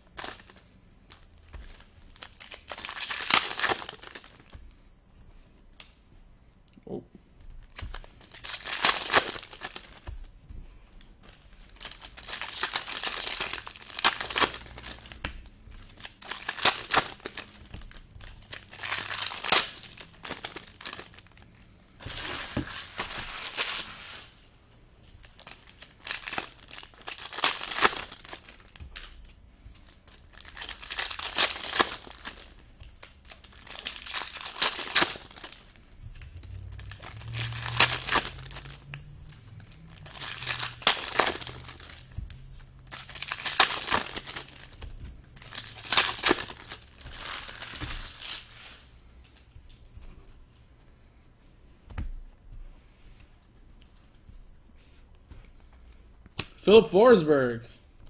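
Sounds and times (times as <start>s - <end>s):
foil wrappers tearing and crinkling: 0.0s - 4.6s, 7.6s - 10.3s, 11.3s - 24.4s, 25.2s - 48.9s.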